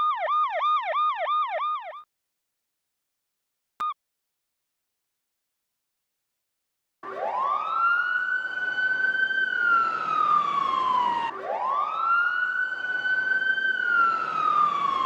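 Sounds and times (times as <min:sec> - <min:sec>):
emergency siren wailing: 0:00.0 - 0:02.1, 0:07.0 - 0:15.0.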